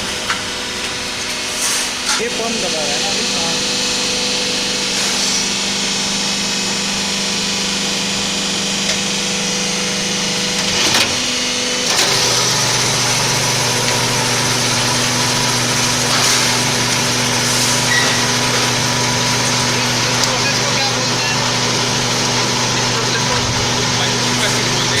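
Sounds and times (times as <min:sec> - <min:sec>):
hydraulic press motor hum: 0:00.0 - 0:25.0
metal clank: 0:10.5 - 0:12.4.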